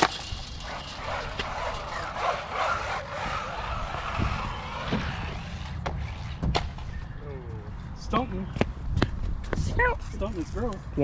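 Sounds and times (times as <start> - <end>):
rc car motor whine: 0.0 - 6.4.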